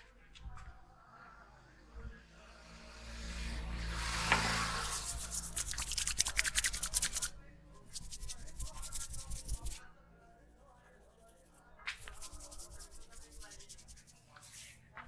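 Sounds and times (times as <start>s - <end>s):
hands scrubbing hair: 4.1s - 9.8s, 12.0s - 14.7s.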